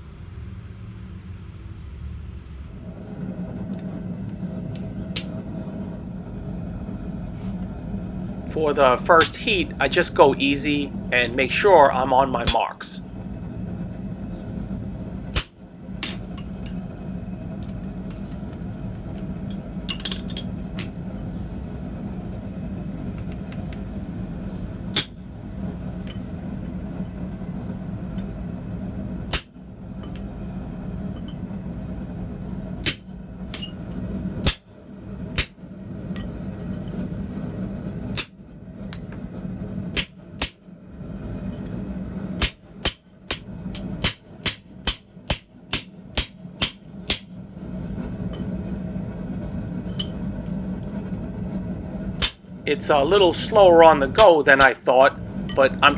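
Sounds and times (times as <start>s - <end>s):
steady low hum: 0.0s - 55.9s
hammer striking chisel on steel: 42.4s - 47.3s.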